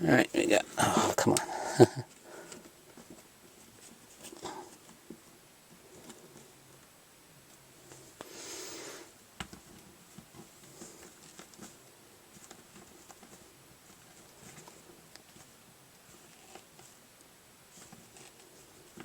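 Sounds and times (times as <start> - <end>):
small taps and clicks: 9.4 - 10.5
plastic figures rustling: 9.5 - 17.0, 17.7 - 19.0.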